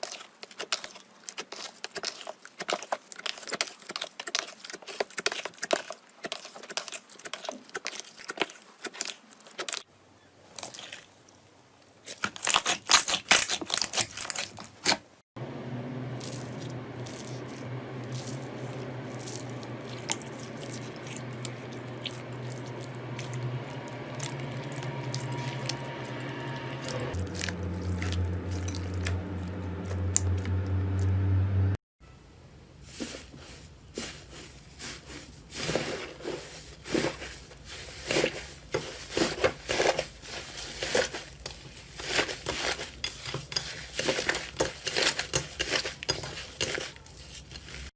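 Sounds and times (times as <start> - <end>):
faint squishing: 0.0 - 15.2, 32.9 - 47.9
steady low hum: 15.4 - 31.8.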